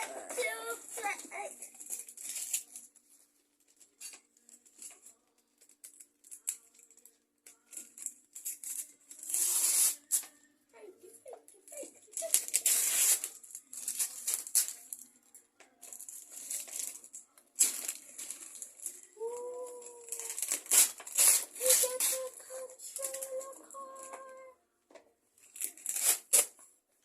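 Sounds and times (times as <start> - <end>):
wrapping paper tearing and crumpling: 0.0 - 3.0, 7.7 - 10.3, 11.7 - 15.1, 15.8 - 24.4, 25.4 - 26.6.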